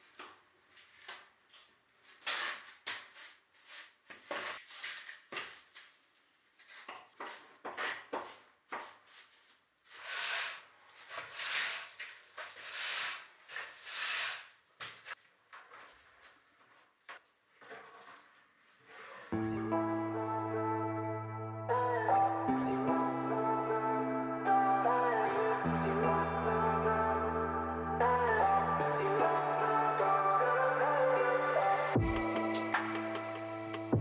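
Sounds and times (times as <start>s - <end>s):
paintbrush swishing on wall: 3.0s - 5.7s, 6.6s - 15.2s.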